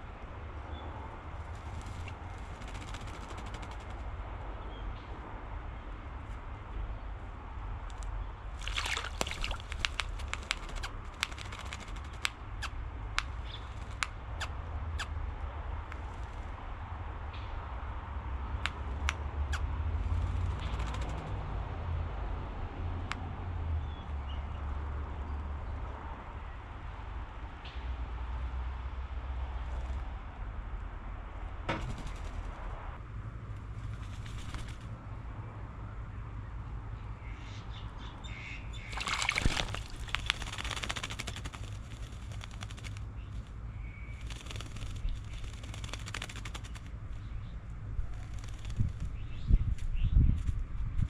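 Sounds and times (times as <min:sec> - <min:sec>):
wing flicks: 0:01.3 - 0:04.1, 0:07.9 - 0:14.5, 0:20.0 - 0:21.4, 0:31.7 - 0:32.8, 0:33.6 - 0:35.0, 0:38.8 - 0:47.3, 0:48.1 - 0:50.6
bird rasping rattle: 0:01.6 - 0:04.0, 0:08.6 - 0:12.7, 0:39.0 - 0:43.5, 0:44.1 - 0:46.9, 0:48.1 - 0:49.0.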